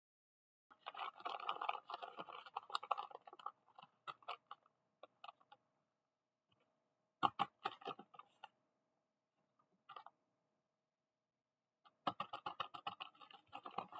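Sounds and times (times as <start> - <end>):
plastic packaging crinkling: 0.8 - 3.5.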